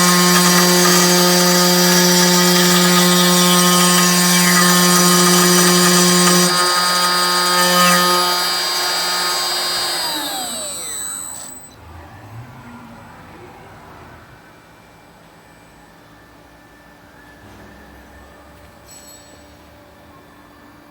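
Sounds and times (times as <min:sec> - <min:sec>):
spindle motor whining: 0:00.0 - 0:11.8.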